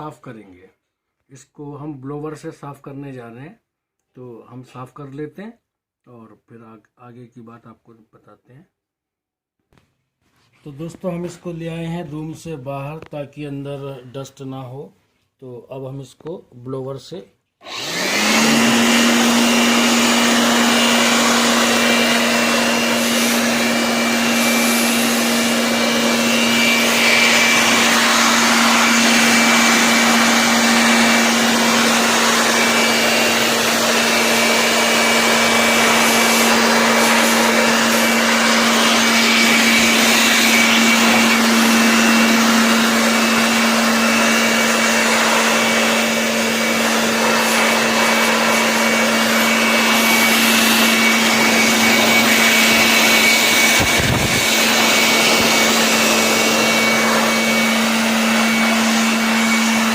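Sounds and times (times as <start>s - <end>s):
electric air blower running: 17.6s - 59.9s.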